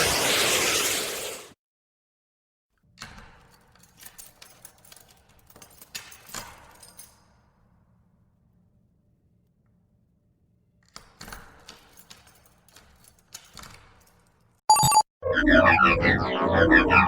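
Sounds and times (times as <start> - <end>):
key working in a door lock: 3.0 - 7.5, 10.8 - 14.6
keys jangling: 3.3 - 7.6, 10.9 - 14.6.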